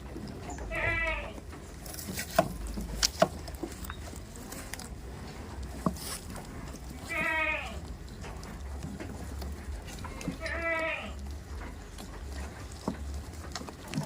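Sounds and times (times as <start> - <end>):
goat bleating: 0.6 - 1.5, 6.9 - 8.0, 9.9 - 11.3.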